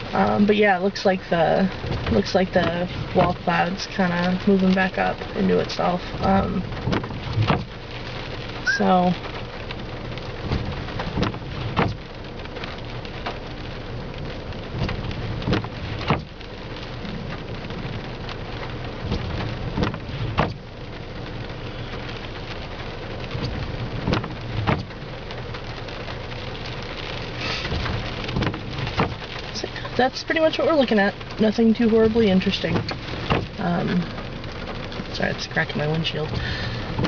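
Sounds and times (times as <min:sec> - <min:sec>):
car engine idling hum: 0:00.0 - 0:37.0
heavy rain on car roof: 0:00.0 - 0:37.0
raindrops knocking on glass: 0:06.3 - 0:07.9, 0:14.6 - 0:16.6, 0:17.2 - 0:20.7, 0:22.9 - 0:25.4, 0:26.2 - 0:29.9, 0:31.1 - 0:35.4.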